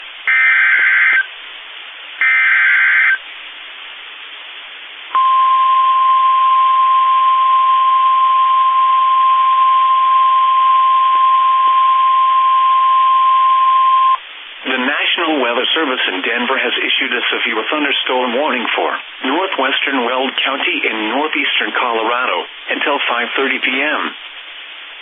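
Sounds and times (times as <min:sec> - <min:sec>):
radio hiss: 0:00.0 - 0:05.4, 0:13.8 - 0:25.0
screechy digital data bursts: 0:00.3 - 0:01.3, 0:02.2 - 0:03.2
warning alarm tone: 0:00.3 - 0:01.3, 0:02.2 - 0:03.2, 0:05.2 - 0:14.2.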